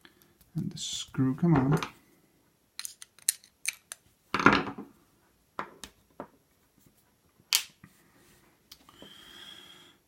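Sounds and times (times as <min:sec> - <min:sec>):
metal lock parts clicking: 0:02.8 - 0:04.0.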